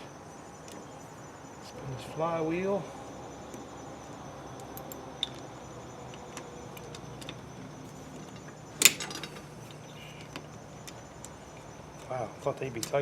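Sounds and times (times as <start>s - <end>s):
crickets chirring: 0.0s - 13.0s
hand tools clicking on metal: 4.7s - 5.4s.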